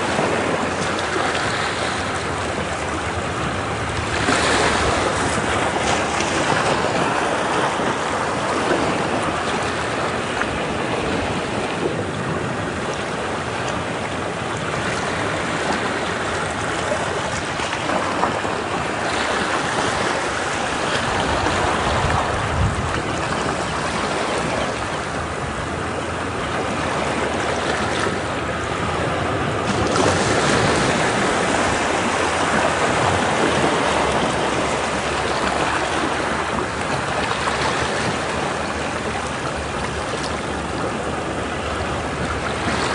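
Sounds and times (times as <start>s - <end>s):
ocean waves breaking on rocks: 0.0s - 42.9s.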